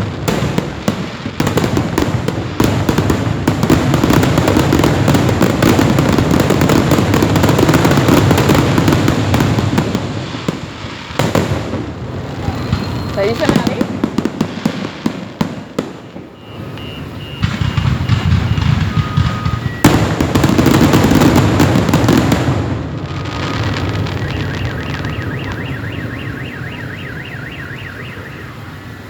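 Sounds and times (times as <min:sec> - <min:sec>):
fireworks banging: 0:00.0 - 0:29.0
fireworks crackling and rumble: 0:00.0 - 0:29.0
car alarm beeping and warbling: 0:16.3 - 0:20.0, 0:23.1 - 0:29.0.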